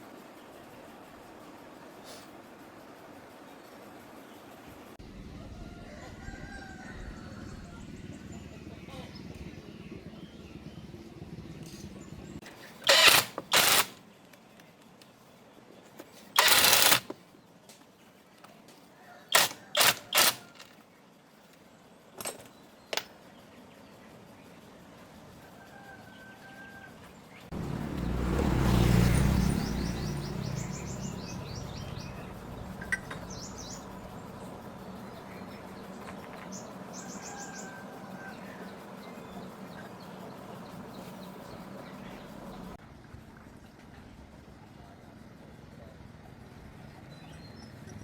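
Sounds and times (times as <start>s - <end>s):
birds chirping: 2.7s - 25.0s, 27.2s - 42.8s.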